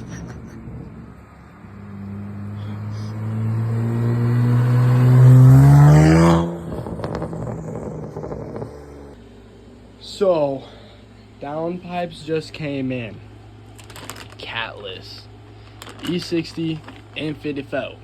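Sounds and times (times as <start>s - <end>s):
car exhaust revving: 0.0s - 9.2s
exhaust pops: 6.6s - 8.9s.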